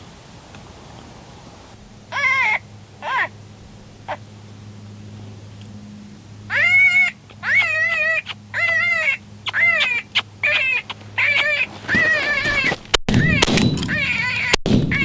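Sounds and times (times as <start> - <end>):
predator call distress cries: 2.0 - 4.3, 6.4 - 15.0.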